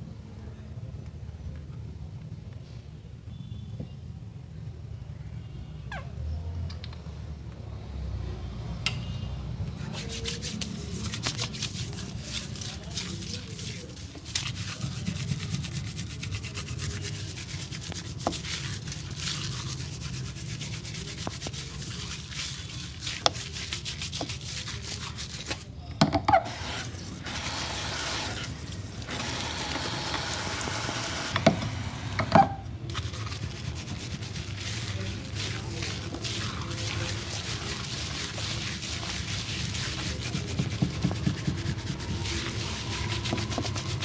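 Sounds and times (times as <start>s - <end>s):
hands scrubbing hair: 9.7s - 25.7s, 26.5s - 31.3s, 32.9s - 44.0s.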